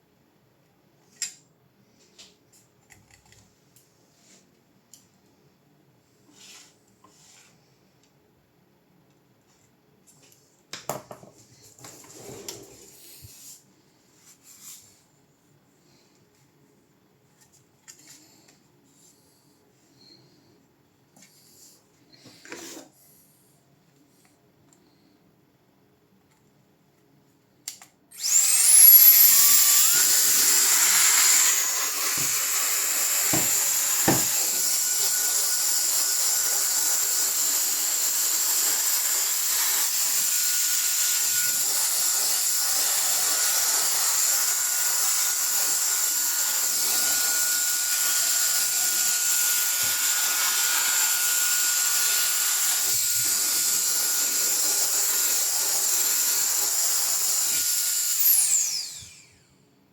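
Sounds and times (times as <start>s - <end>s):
click: 27.6s - 28.0s
electric motor whining: 28.2s - 34.8s, 57.6s - 59.4s.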